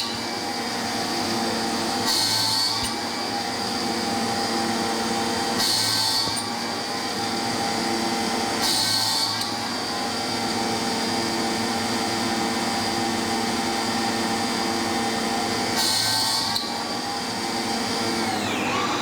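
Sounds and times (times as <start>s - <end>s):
drill bit drilling metal: 17.5s - 19.0s
high tone falling in pitch: 18.2s - 19.0s.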